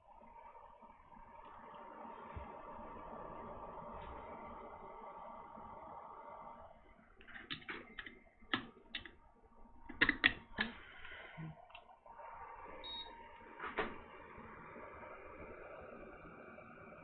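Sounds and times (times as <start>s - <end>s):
hot air station airflow hiss: 0.0s - 17.0s
sharp clicks and light taps: 7.2s - 9.2s, 9.8s - 11.9s.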